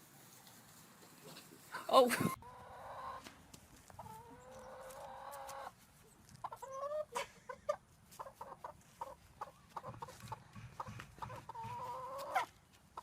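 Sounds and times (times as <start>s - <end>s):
chicken calling: 2.0s - 3.3s, 4.0s - 5.7s, 6.4s - 13.0s
chicken clucking: 2.2s - 13.0s.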